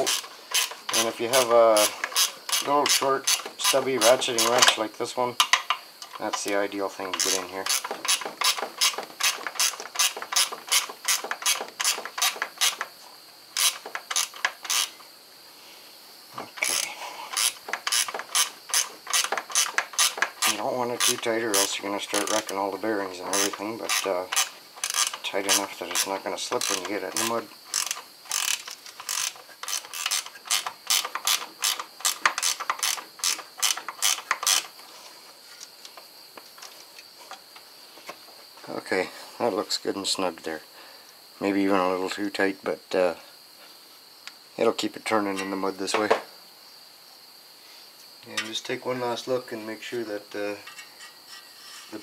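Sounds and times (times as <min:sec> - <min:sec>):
ratcheting wrench clicking: 0:00.0 - 0:04.8, 0:07.1 - 0:12.9, 0:13.6 - 0:14.9, 0:16.6 - 0:22.6, 0:23.3 - 0:34.8.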